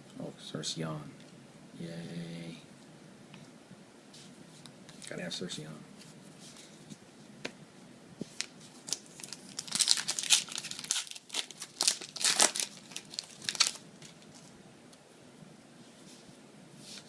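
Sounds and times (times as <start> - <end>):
foil wrapper crinkling and tearing: 8.4 - 14.5.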